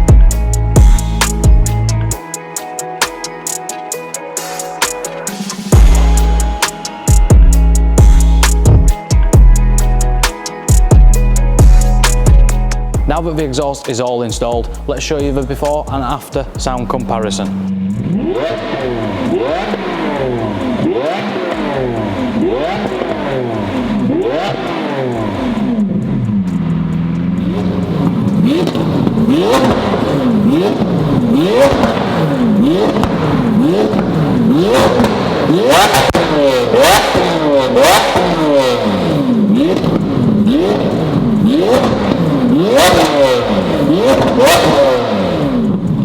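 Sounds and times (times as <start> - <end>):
car engine revving: 4.7 - 13.8, 14.5 - 46.0
exhaust crackles and pops: 26.1 - 46.0.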